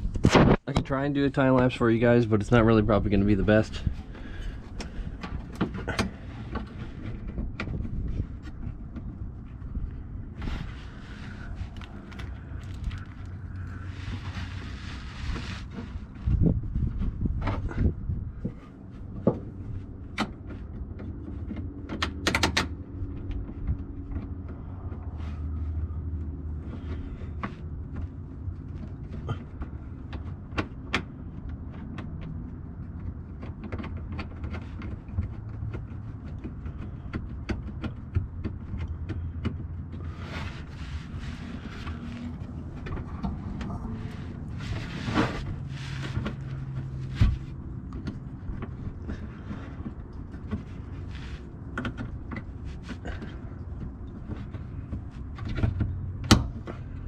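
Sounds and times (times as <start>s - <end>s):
steady low rumble: 0.0s - 22.0s, 34.6s - 57.0s
scraping rustles: 1.7s - 21.8s, 22.9s - 57.0s.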